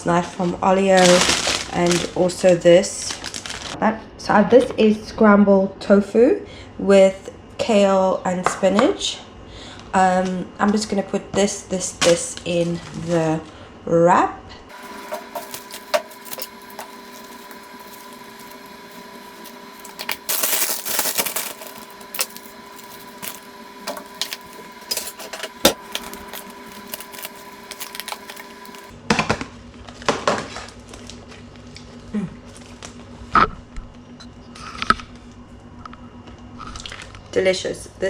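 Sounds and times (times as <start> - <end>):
faint steady hum: 14.7 - 28.9
loud rustle: 14.7 - 28.9.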